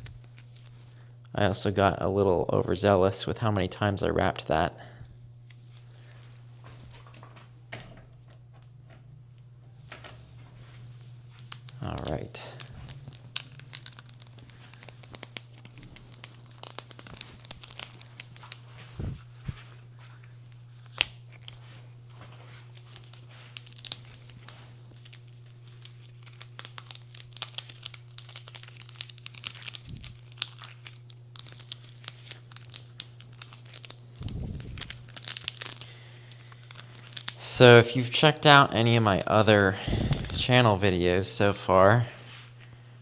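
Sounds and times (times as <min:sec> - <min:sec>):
tape peeling and crackling: 0:00.0 - 0:01.1, 0:11.3 - 0:38.9, 0:39.8 - 0:41.6.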